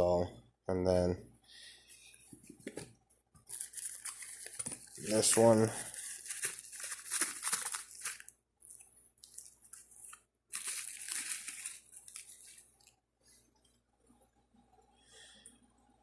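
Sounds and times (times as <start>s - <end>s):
packaging crinkling: 2.5s - 13.0s.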